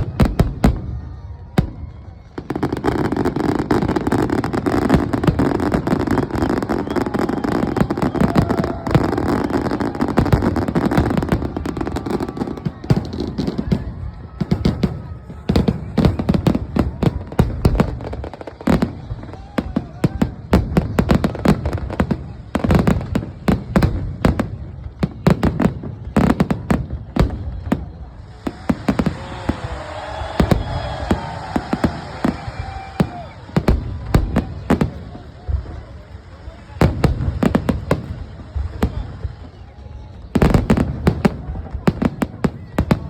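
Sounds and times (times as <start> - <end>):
fireworks bangs: 0.0 - 43.0.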